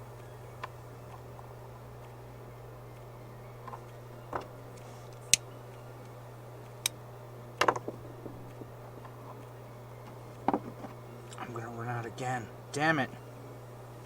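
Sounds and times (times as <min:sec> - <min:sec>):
steady low hum: 0:00.0 - 0:14.0
hand tools clicking and tapping: 0:07.6 - 0:11.4.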